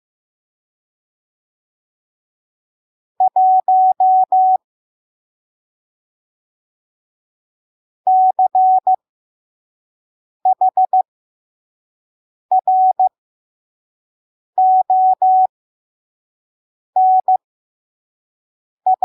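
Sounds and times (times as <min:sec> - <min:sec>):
morse code beeps: 0:03.4 - 0:04.6, 0:10.6 - 0:11.0, 0:12.5 - 0:13.1, 0:14.6 - 0:15.5.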